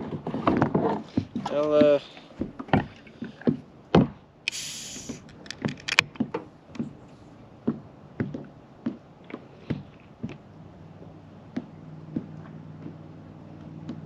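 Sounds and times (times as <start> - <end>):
short hiss: 4.5 - 5.4.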